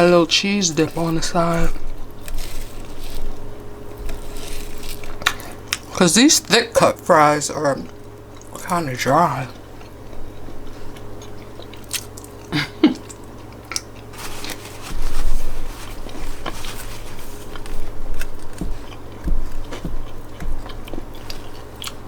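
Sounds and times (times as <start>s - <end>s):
person chewing food: 0.8s - 5.9s, 7.9s - 8.7s, 9.4s - 22.0s.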